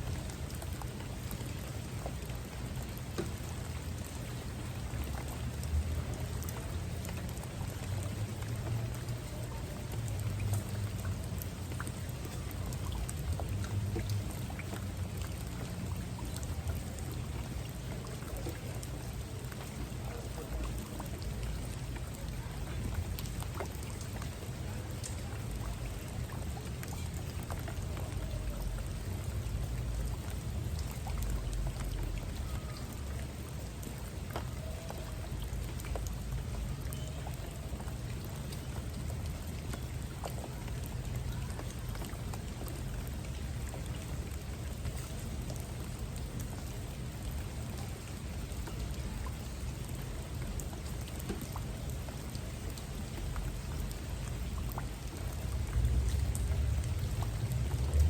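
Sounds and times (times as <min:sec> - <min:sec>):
raindrops ticking: 0:00.0 - 0:58.0
steady rain: 0:00.0 - 0:58.0
low rumble: 0:55.5 - 0:58.0.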